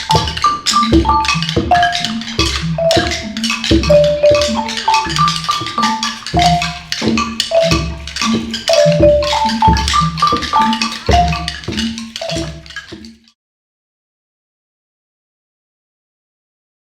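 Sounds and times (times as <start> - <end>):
steady low drum beat: 0.0 - 13.0
mallet percussion melody: 0.0 - 13.3
wood-block clicks: 0.0 - 13.3.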